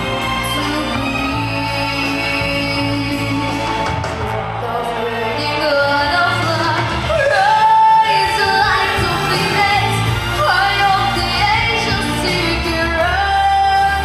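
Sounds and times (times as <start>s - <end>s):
woman singing: 0.4s - 4.0s, 4.6s - 14.0s.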